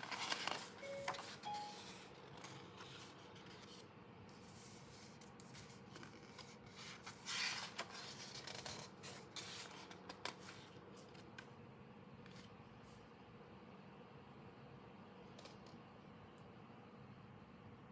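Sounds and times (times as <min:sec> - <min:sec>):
paper and card rustling: 0:00.0 - 0:11.5.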